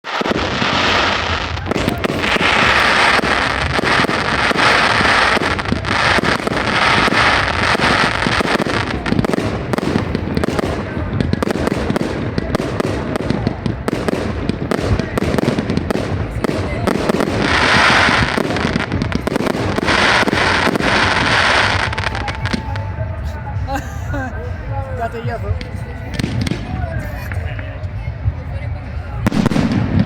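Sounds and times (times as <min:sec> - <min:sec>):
hissing crackle: 0:00.0 - 0:22.9
fireworks banging and crackling: 0:00.0 - 0:30.0.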